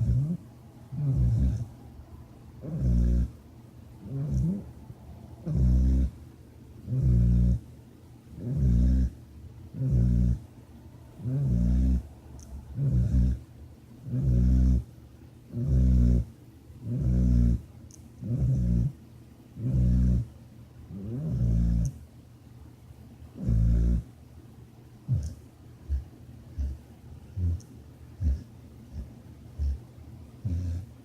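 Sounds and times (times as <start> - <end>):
low-pitched snoring: 0.0 - 1.8, 2.6 - 3.4, 4.0 - 4.8, 5.4 - 6.2, 6.8 - 7.7, 8.3 - 10.5, 11.2 - 13.4, 14.0 - 14.9, 15.5 - 19.0, 19.6 - 20.3, 20.9 - 22.0, 23.4 - 24.1, 25.1 - 29.8, 30.4 - 31.0.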